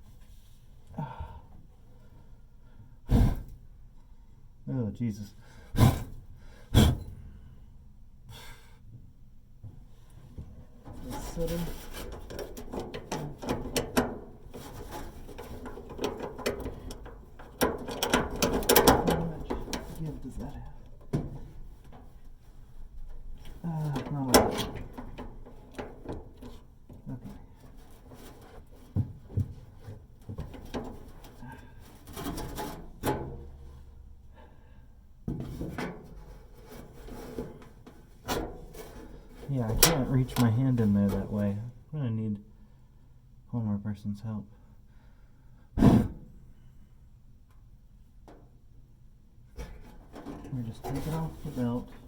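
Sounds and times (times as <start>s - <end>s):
clicks knocks and rattles of metal parts: 9.6s - 33.7s, 35.3s - 41.4s, 48.2s - 48.7s, 49.5s - 52.0s
hand rubbing and scraping: 9.9s - 24.3s, 35.3s - 41.6s, 49.5s - 52.0s.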